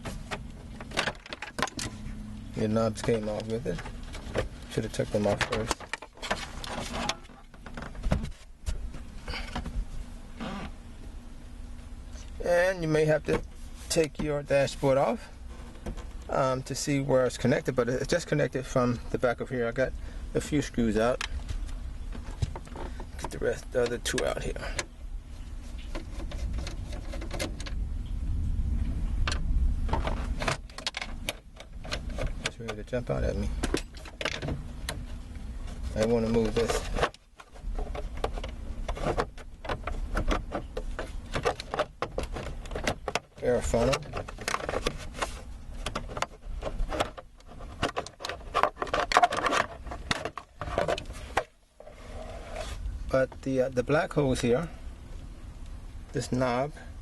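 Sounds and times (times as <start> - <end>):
steady low rumble: 0.0 - 47.8
plastic trim clicking and scraping: 25.7 - 27.8, 29.3 - 53.4.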